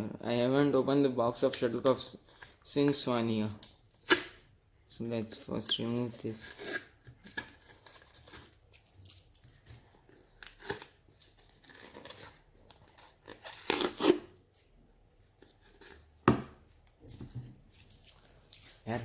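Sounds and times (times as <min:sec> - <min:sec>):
sticky tape tearing: 0:13.4 - 0:14.3.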